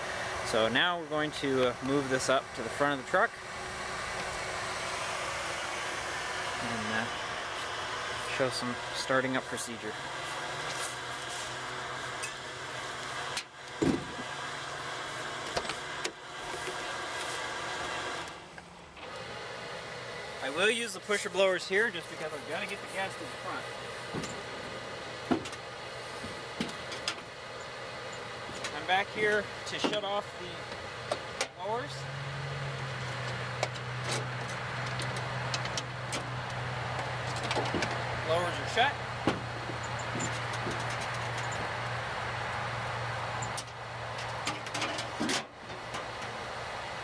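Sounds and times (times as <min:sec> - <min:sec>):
electric blowers humming: 0:00.0 - 0:47.0
electric blower hum: 0:01.6 - 0:21.4
heavy thump: 0:13.8 - 0:14.2.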